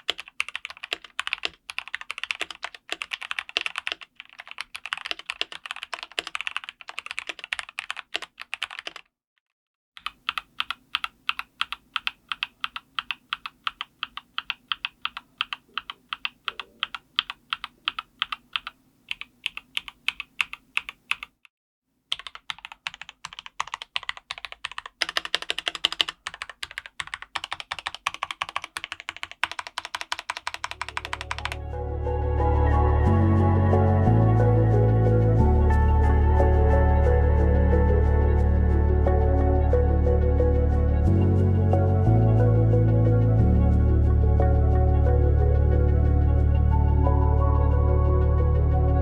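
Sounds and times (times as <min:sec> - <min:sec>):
mechanical keyboard typing: 0:00.0 - 0:09.1, 0:10.0 - 0:21.5, 0:22.1 - 0:31.7.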